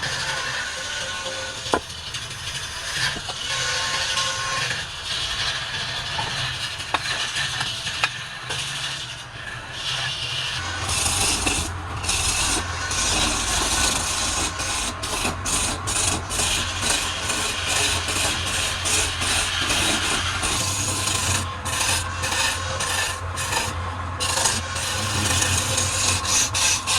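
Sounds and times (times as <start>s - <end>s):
turning tool scraping wood: 0.0s - 26.9s
lathe motor hum: 8.7s - 26.9s.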